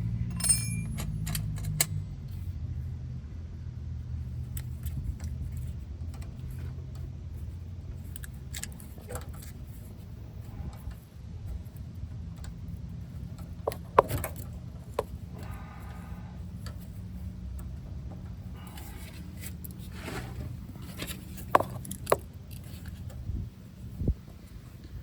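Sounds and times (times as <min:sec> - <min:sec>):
steady low hum: 0:00.0 - 0:25.0
wrench clinking on metal: 0:00.2 - 0:02.0.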